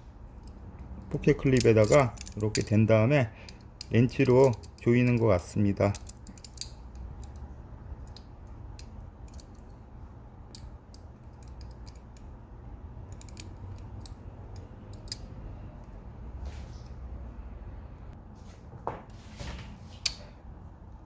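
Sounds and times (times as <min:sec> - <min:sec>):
small metal clicks and taps: 0:00.4 - 0:02.7, 0:05.9 - 0:09.8, 0:10.5 - 0:12.3, 0:13.1 - 0:16.0.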